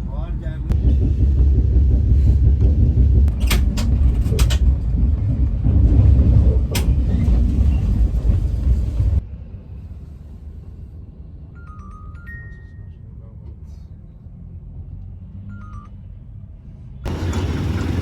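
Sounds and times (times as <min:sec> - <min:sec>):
vehicle rumble: 0:00.0 - 0:18.0
clicks and rattles: 0:03.3 - 0:05.0.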